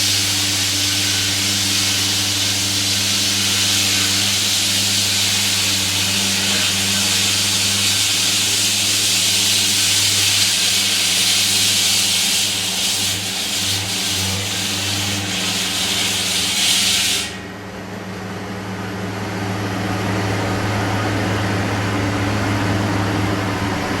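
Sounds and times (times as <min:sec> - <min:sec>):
saw blade grinding concrete: 0:00.0 - 0:17.4
concrete saw engine: 0:00.0 - 0:24.0.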